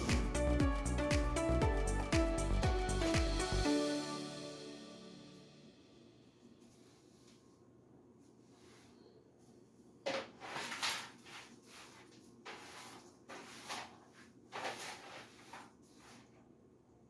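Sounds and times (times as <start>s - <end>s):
knocks and scrapes of kitchen items: 10.1s - 16.4s.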